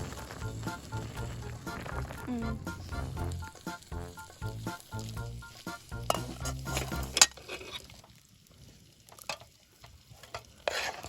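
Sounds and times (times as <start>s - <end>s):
background music: 0.0s - 7.3s
utensil scraping food in pan: 5.5s - 8.0s, 10.1s - 11.0s.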